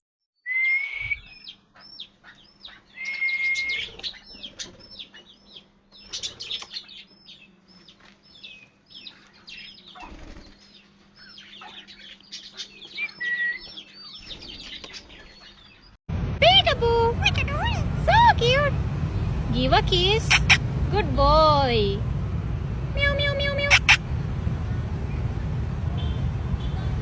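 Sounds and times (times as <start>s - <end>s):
parrot whistled note: 0.4s - 1.3s
parrot chirping: 20.1s - 20.8s, 23.0s - 24.0s.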